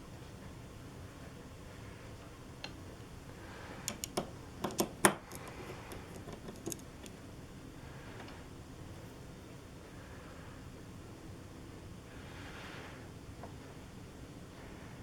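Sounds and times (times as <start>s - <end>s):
light clicks and clinks of parts: 3.8s - 7.2s.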